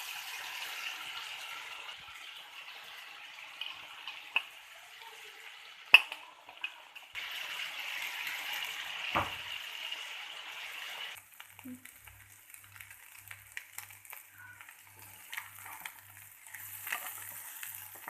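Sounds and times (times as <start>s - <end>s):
potatoes sizzling in a pan: 0.0s - 18.0s.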